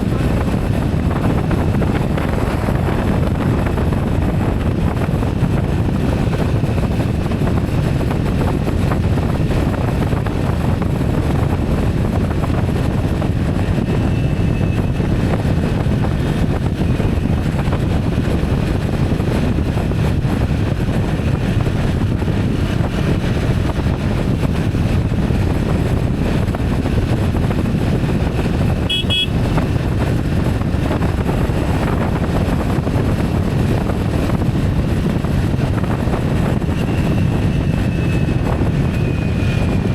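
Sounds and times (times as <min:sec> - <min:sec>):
vehicle noise: 0:00.0 - 0:39.9
wind rumble: 0:00.0 - 0:39.9
horn toot: 0:28.9 - 0:29.4.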